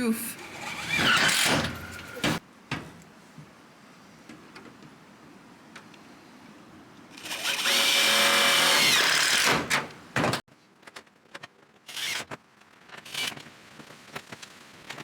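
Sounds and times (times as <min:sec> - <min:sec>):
power drill driving screw into metal: 0:00.4 - 0:02.4, 0:07.2 - 0:09.8.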